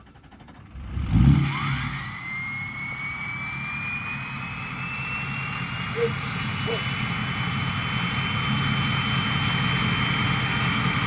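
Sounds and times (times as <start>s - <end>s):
diesel engine rumble: 0.0s - 11.0s
turbo whistle: 2.4s - 7.0s.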